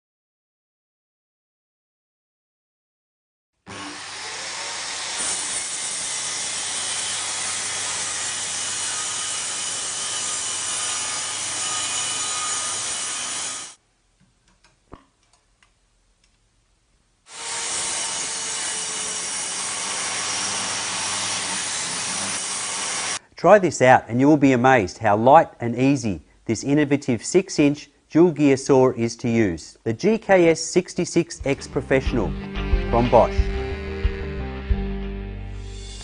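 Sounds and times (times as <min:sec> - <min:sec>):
circular saw cutting wood: 0:03.7 - 0:13.8, 0:17.3 - 0:23.2, 0:35.5 - 0:36.0.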